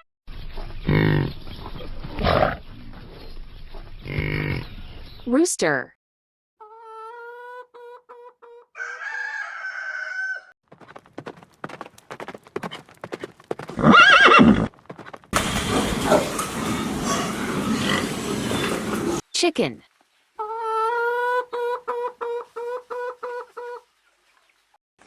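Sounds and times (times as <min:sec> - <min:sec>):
rooster crowing: 0:08.7 - 0:10.5
hoofbeats: 0:10.7 - 0:19.2
horse whinny: 0:13.7 - 0:14.7
loud rushing noise: 0:15.4 - 0:19.2.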